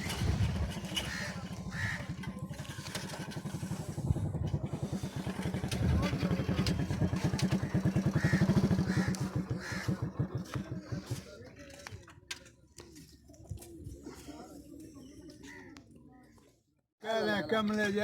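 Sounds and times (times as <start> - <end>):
small engine running: 0.0 - 11.3.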